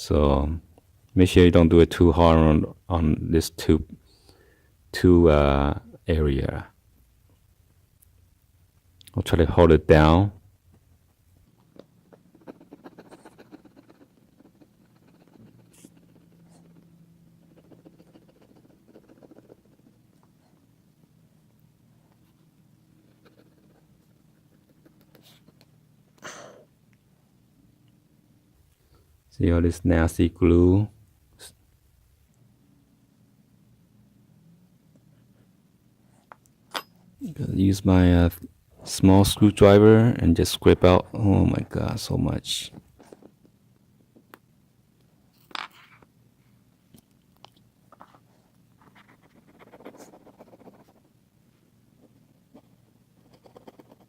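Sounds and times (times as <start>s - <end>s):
short breath: 4.0s - 4.8s.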